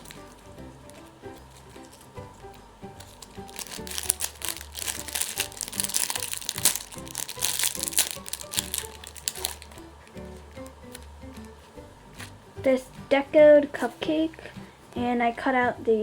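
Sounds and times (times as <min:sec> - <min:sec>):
paper and tape crinkling: 0:00.0 - 0:12.4
background music: 0:00.0 - 0:16.0.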